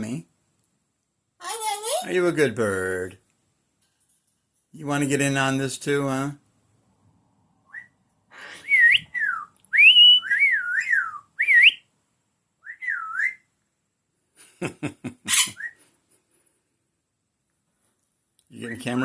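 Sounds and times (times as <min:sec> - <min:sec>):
parrot whistling: 0:07.7 - 0:11.9, 0:12.6 - 0:13.5, 0:15.3 - 0:15.8.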